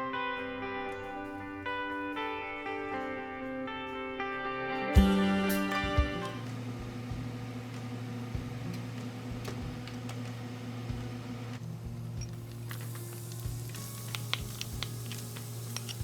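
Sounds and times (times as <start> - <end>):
low mechanical hum: 5.0 - 16.0.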